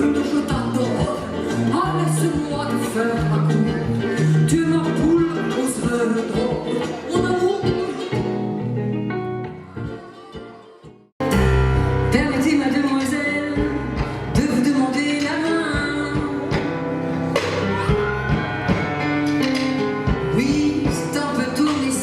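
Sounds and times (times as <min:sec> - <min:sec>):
person singing: 0:00.0 - 0:08.4, 0:09.3 - 0:11.0, 0:20.0 - 0:22.0
acoustic instrumental accompaniment: 0:00.0 - 0:22.0.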